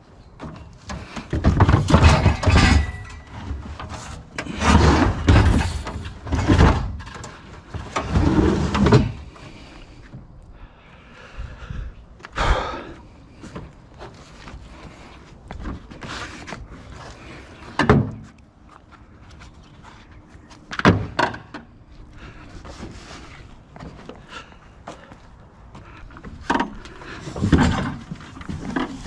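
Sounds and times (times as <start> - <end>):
heavy scrap knocks and bangs: 1.0 - 9.2.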